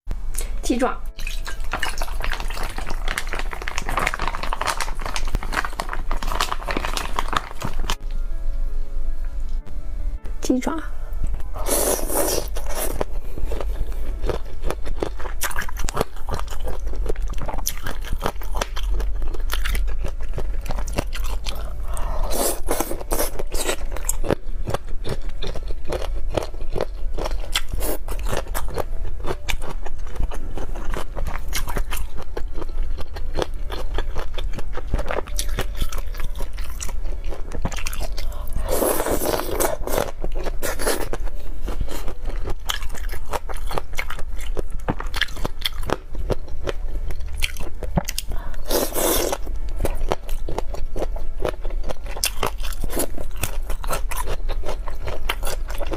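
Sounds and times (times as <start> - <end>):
crunchy chewing: 1.4 - 8.0, 11.6 - 55.9
low hum: 4.6 - 39.0.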